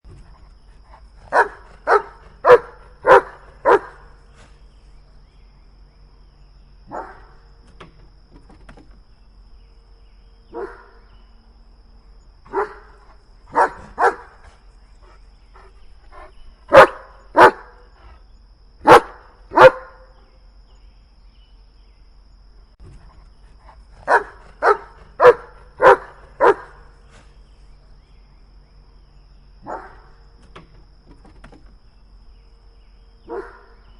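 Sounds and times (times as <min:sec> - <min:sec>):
dog barking: 0:01.3 - 0:04.0, 0:06.9 - 0:07.3, 0:10.5 - 0:11.0, 0:12.5 - 0:12.9, 0:13.5 - 0:14.4, 0:16.7 - 0:17.8, 0:18.8 - 0:20.1, 0:24.1 - 0:26.8, 0:29.6 - 0:30.1, 0:33.3 - 0:33.8.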